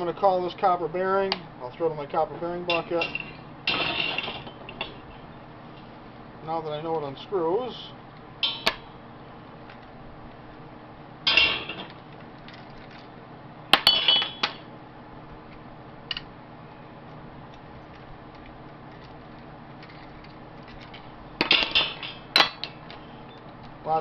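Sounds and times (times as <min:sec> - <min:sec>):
small metal parts clinking: 0:02.7 - 0:05.2, 0:17.8 - 0:23.4.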